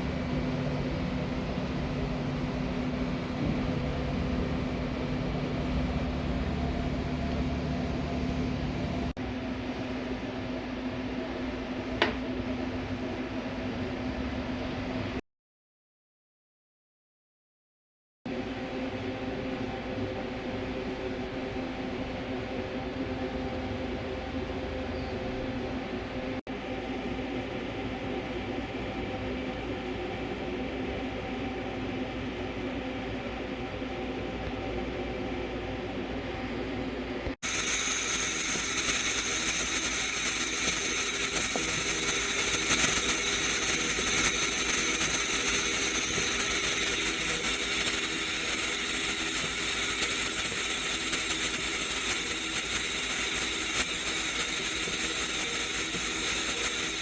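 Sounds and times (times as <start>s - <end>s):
machine hum: 31.9s - 57.0s
welding arc hissing and whining: 37.4s - 57.0s.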